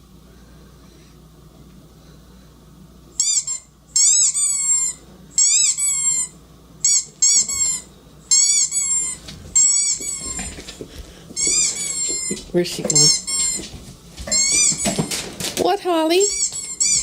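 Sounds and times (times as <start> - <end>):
squeaky dog toy squeaking: 3.2 - 10.4, 11.4 - 13.6, 14.3 - 15.2, 16.2 - 17.0.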